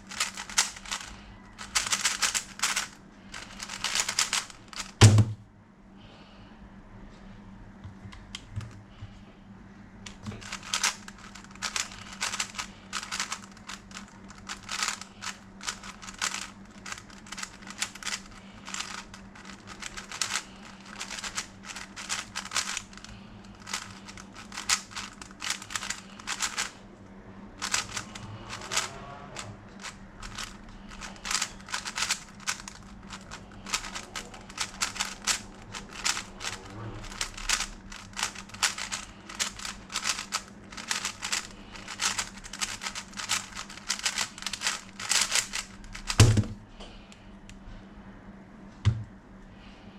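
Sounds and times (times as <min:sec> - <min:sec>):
puzzle cube layers clacking: 0:00.1 - 0:05.0, 0:10.1 - 0:26.7, 0:27.6 - 0:28.9, 0:29.8 - 0:46.2.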